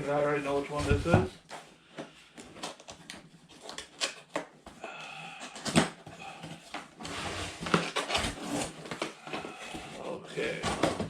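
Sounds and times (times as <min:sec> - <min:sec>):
packing rustles and clicks: 0:05.2 - 0:11.0.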